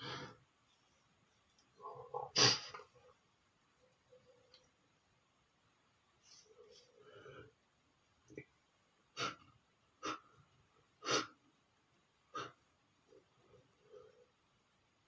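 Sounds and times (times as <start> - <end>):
soft breathing: 6.2 - 7.6.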